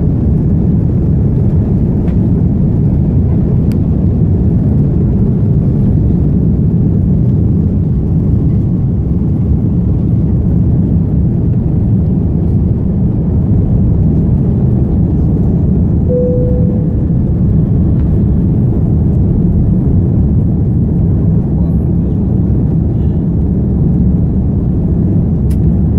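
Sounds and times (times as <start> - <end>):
airliner engine and airflow roar: 0.0 - 25.9
brief tone: 16.1 - 17.6.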